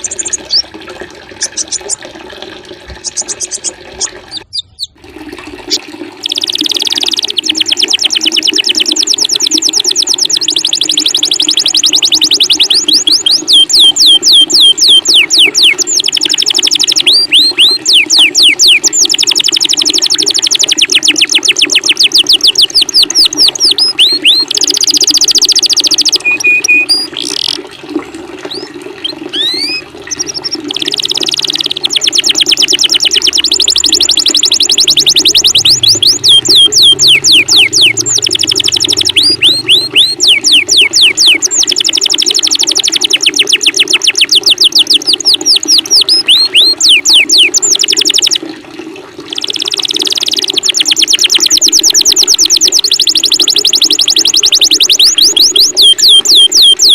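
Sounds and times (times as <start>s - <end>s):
running water: 0.0s - 56.9s
songbird chatter: 4.3s - 5.0s.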